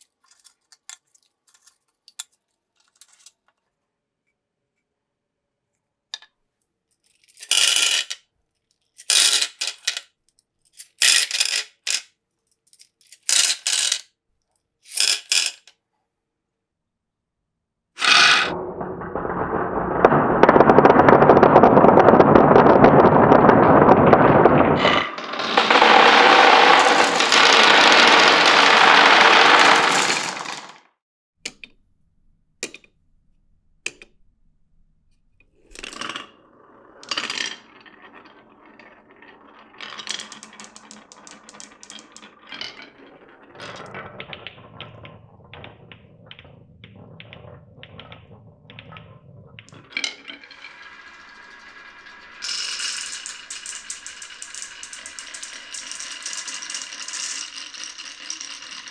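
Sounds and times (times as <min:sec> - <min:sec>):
marbles rolling and clattering: 0:07.3 - 0:08.2, 0:09.0 - 0:10.0, 0:10.8 - 0:12.0, 0:13.1 - 0:14.0, 0:14.9 - 0:15.7, 0:18.0 - 0:30.9, 0:35.7 - 0:58.9
marble clicks: 0:18.0 - 0:30.8, 0:36.9 - 0:58.9.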